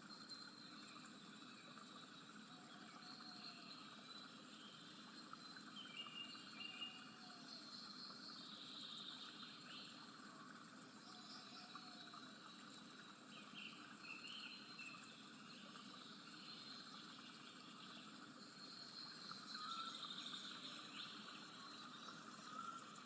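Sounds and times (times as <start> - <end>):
faint high chirping calls: 11.0 - 23.0.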